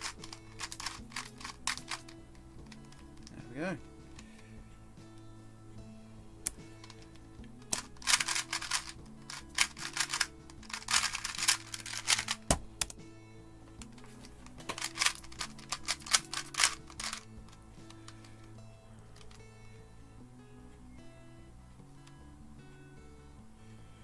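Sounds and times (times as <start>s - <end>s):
plastic speed cube clicking: 0.0s - 3.3s, 6.5s - 13.0s, 13.8s - 18.2s
quiet background music: 0.0s - 24.0s.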